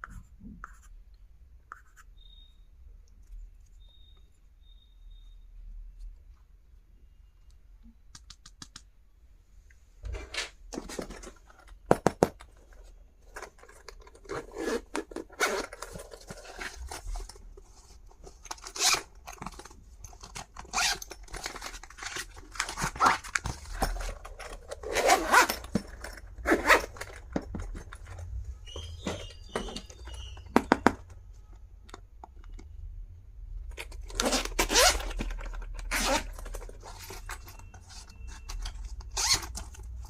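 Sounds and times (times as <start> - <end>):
sharp clicks and taps: 8.1 - 8.9
packaging rustling and tearing: 13.5 - 27.0.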